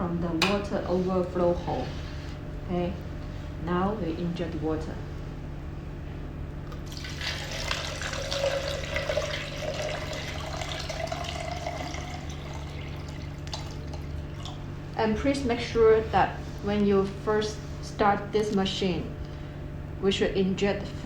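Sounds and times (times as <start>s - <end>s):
steady low hum: 0.0s - 21.0s
water pouring into a tank: 6.8s - 14.6s.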